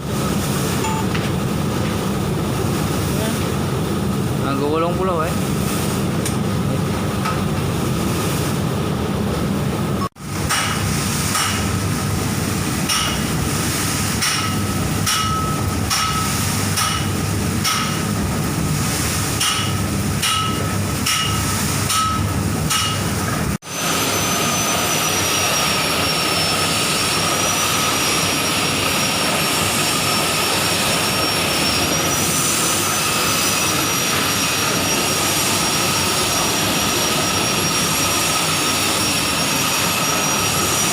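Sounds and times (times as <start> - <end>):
crop dryer machine running: 0.0 - 40.9
thin high whine: 0.7 - 1.3, 23.6 - 40.9.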